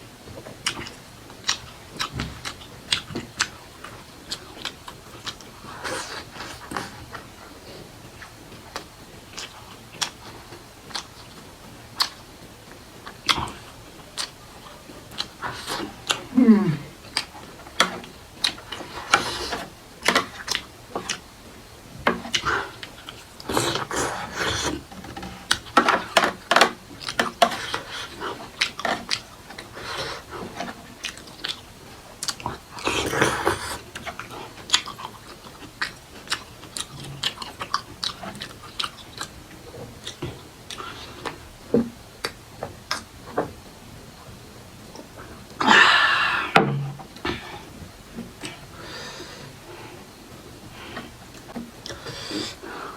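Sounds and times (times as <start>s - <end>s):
person chewing: 0.4s - 21.3s, 22.2s - 41.5s.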